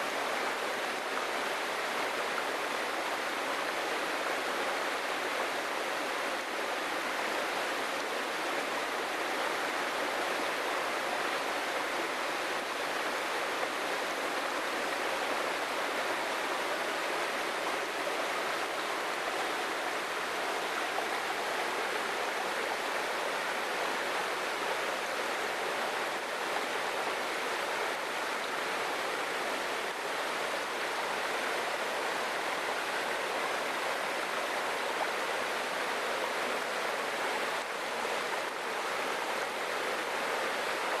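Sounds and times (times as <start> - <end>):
waterfall rushing and splashing: 0.0 - 41.0.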